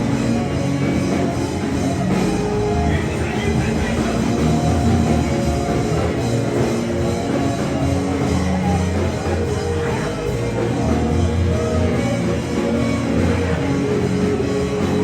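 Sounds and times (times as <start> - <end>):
band music with drums and guitar: 0.0 - 15.0.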